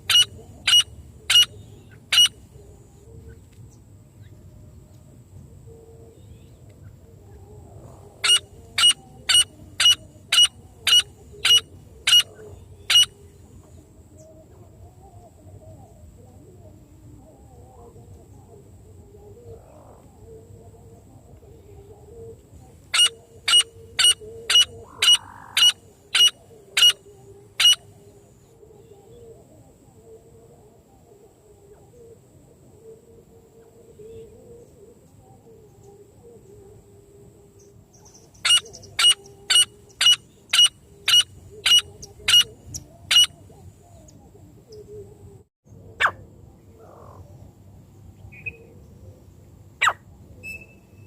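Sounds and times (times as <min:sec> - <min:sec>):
francolin calls: 0:00.0 - 0:02.7, 0:07.6 - 0:13.4, 0:22.9 - 0:28.1, 0:37.6 - 0:45.0, 0:49.8 - 0:51.0.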